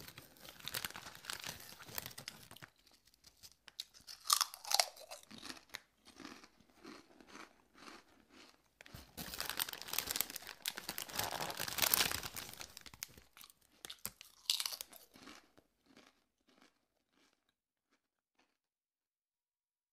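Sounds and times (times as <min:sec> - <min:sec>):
person chewing crunchy food: 0:00.0 - 0:18.6.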